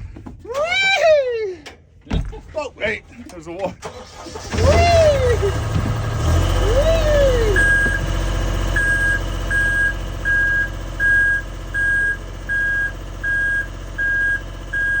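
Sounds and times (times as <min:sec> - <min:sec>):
construction machine engine running: 0:02.8 - 0:15.0
backup alarm beeping: 0:07.3 - 0:15.0.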